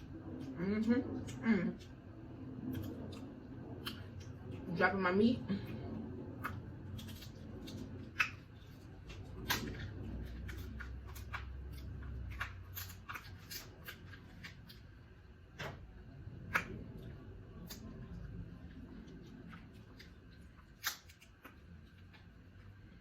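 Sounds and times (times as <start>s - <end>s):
seafood shells cracking by hand: 6.4s - 14.9s, 20.0s - 22.2s.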